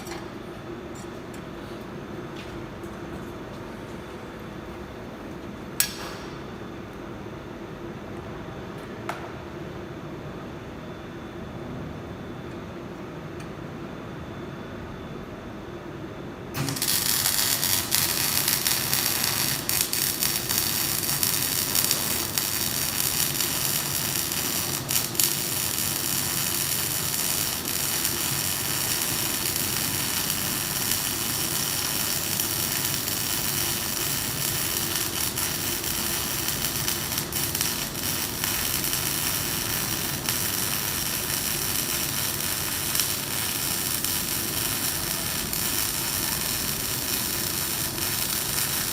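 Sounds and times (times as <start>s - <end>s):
arc welding hissing and crackling: 16.5s - 48.9s
welding arc pops: 16.5s - 48.9s.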